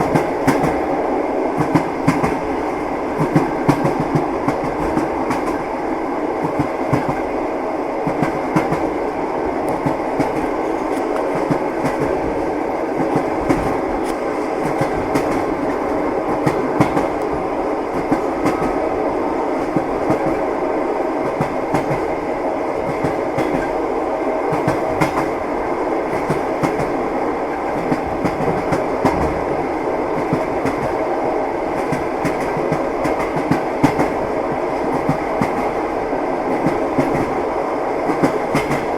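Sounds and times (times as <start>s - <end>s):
train wheels knocking on rails: 0.0s - 0.9s, 1.5s - 5.7s, 6.4s - 7.3s, 8.0s - 9.0s, 9.6s - 18.8s, 19.6s - 20.5s, 21.2s - 22.1s, 22.8s - 23.8s, 24.5s - 25.4s, 26.0s - 31.1s, 31.7s - 34.2s, 34.8s - 35.8s, 36.5s - 37.4s, 38.1s - 38.9s
train running rumble: 0.0s - 38.9s.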